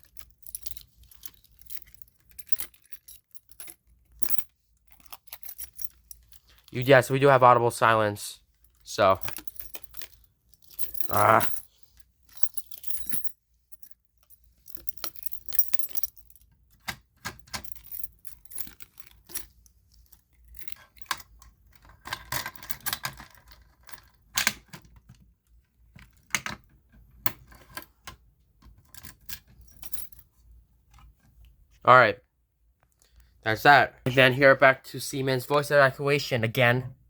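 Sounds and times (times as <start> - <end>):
keys jangling: 0.0 - 7.3, 8.6 - 24.8, 28.9 - 30.3
clicks and knocks of handling: 14.2 - 30.2.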